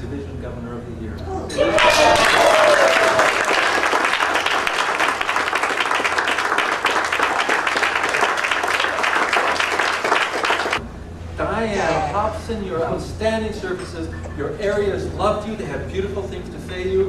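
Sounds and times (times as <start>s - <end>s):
audience applauding: 1.7s - 10.8s
person calling out: 11.6s - 12.4s.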